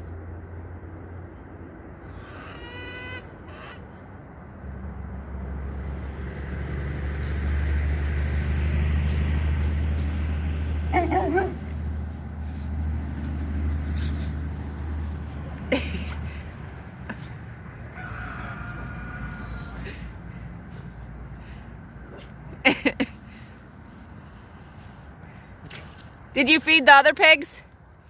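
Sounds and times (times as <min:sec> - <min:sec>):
vehicle engine running: 0:04.5 - 0:18.0
chicken call: 0:17.9 - 0:20.0.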